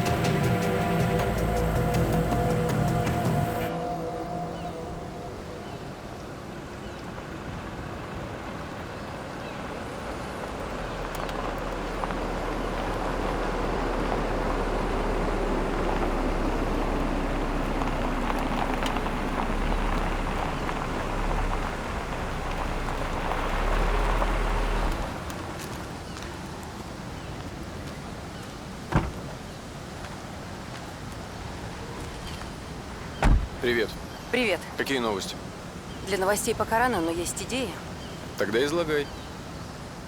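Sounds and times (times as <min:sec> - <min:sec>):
vehicle running with hiss: 0:00.0 - 0:05.7, 0:07.7 - 0:26.2
low rumble: 0:00.0 - 0:07.2.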